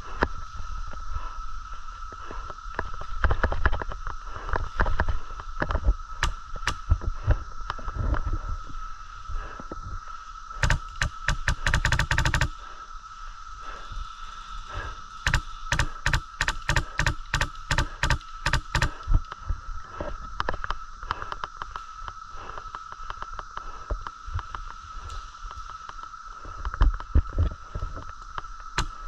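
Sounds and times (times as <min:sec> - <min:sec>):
airsoft gun firing: 0:10.6 - 0:12.6, 0:15.3 - 0:19.0.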